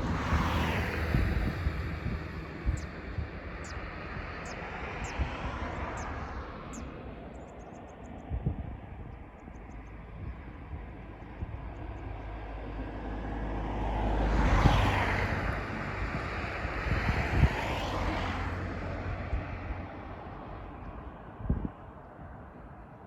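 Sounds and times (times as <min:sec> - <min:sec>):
vehicle passing by: 0:00.0 - 0:07.3, 0:11.0 - 0:21.6.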